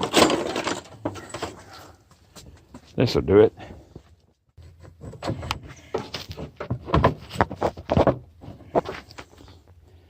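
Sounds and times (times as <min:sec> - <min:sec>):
irregular knocks and clunks: 0:03.9 - 0:09.3.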